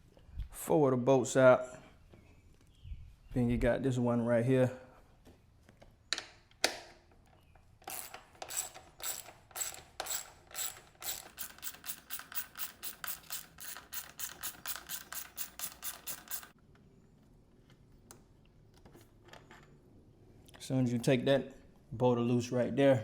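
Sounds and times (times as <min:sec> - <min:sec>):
socket ratchet clicking: 0:07.8 - 0:16.6.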